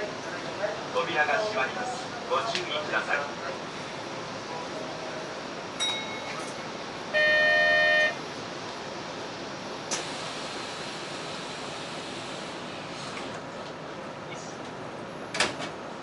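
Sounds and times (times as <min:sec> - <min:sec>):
train running: 0:01.8 - 0:16.0
two-tone train horn blast: 0:07.1 - 0:08.2.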